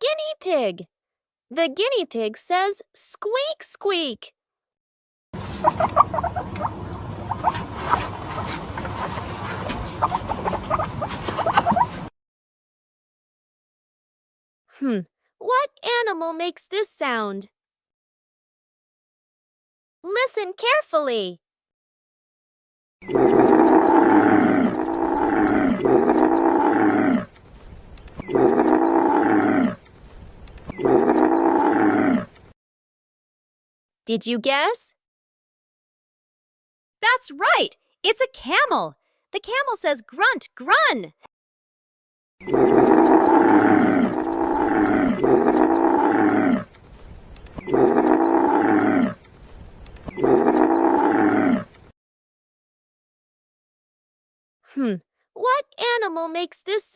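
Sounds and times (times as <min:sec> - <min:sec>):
camel grunting: 0:23.1 - 0:27.3, 0:28.3 - 0:29.8, 0:30.8 - 0:32.4, 0:42.4 - 0:46.8, 0:47.6 - 0:49.2, 0:50.1 - 0:51.8.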